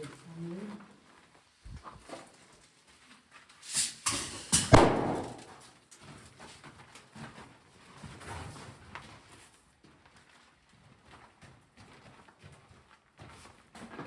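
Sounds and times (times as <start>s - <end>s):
sharp bangs and knocks: 4.1s - 5.6s.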